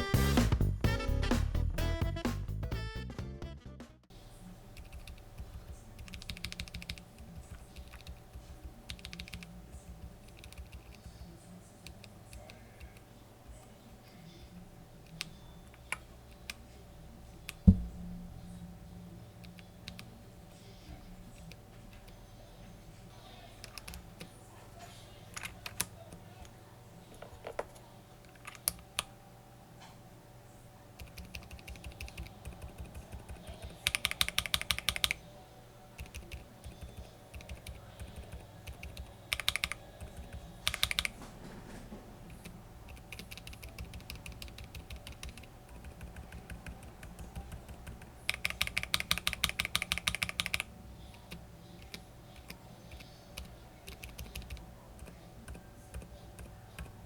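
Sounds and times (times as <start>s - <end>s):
typing on mechanical keyboard: 4.8s - 13.0s, 23.6s - 24.0s, 25.4s - 26.1s, 28.3s - 29.1s, 31.0s - 35.2s, 36.0s - 41.2s, 42.3s - 57.0s.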